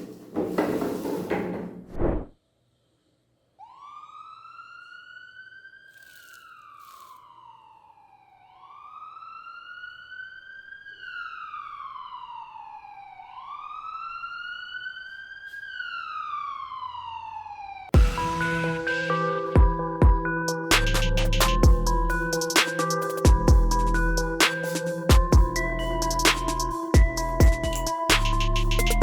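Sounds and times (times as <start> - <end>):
wailing siren: 3.6 - 29.0
electronic music: 18.0 - 29.0.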